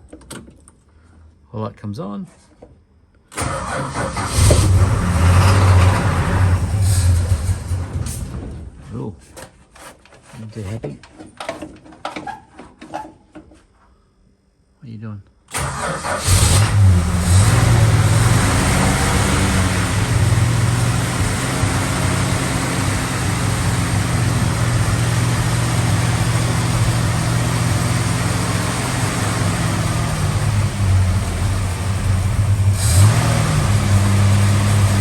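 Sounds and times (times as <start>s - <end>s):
car engine running on choke: 4.0s - 8.2s, 15.5s - 35.0s.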